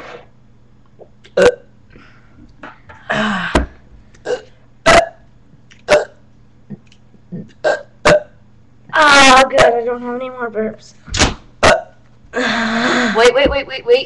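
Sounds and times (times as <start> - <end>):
person burping: 1.3 - 1.7, 4.2 - 5.3, 5.9 - 8.4, 11.6 - 13.2.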